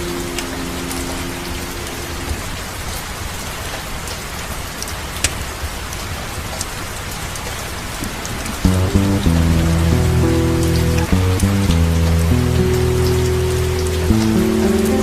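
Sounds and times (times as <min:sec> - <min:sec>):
rain falling: 0:00.0 - 0:15.0
sustained music note: 0:08.7 - 0:15.0.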